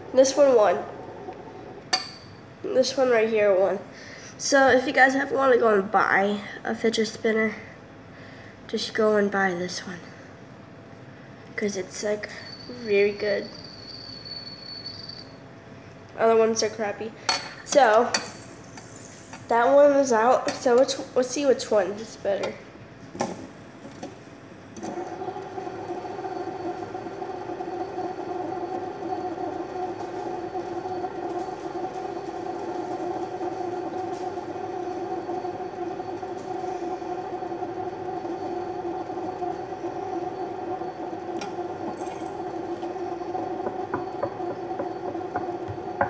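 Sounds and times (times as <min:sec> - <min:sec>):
fidget spinners whirring: 0:11.6 - 0:15.3, 0:25.7 - 0:46.0.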